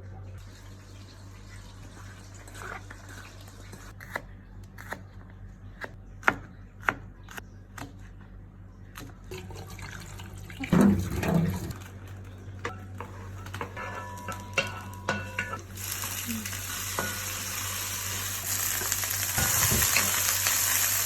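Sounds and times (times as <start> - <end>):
faint water running: 0.0 - 3.9, 9.2 - 21.0
kitchenware clatter: 10.6 - 15.8, 18.8 - 20.5.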